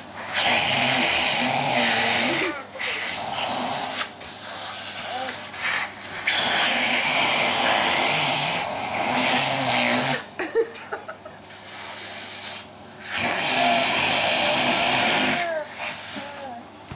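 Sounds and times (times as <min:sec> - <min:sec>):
vacuum cleaner motor running: 0:00.0 - 0:10.4, 0:11.5 - 0:16.6.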